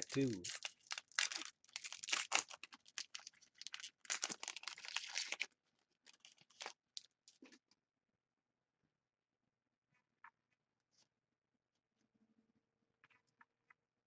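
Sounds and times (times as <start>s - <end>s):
wrapper tearing and crinkling: 0.0s - 7.1s.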